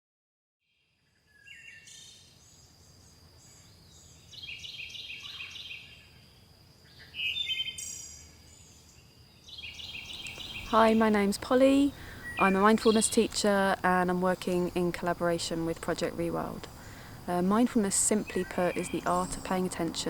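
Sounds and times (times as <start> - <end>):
bird chirping: 0.7 - 20.0
thin steady high tone: 10.3 - 20.0.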